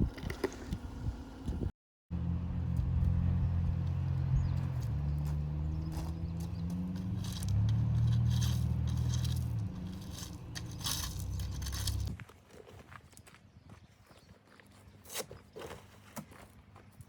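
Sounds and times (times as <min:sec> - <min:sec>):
vehicle engine running: 0:00.1 - 0:12.2
tyres crunching on gravel: 0:02.7 - 0:17.0.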